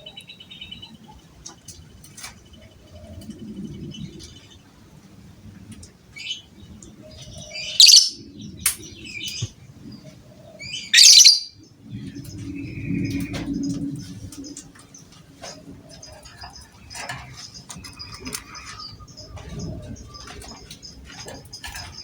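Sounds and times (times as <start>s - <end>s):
lovebird chirps: 7.7s - 8.2s, 10.9s - 11.5s
shrill bird squawks: 7.8s - 8.2s, 11.0s - 11.5s.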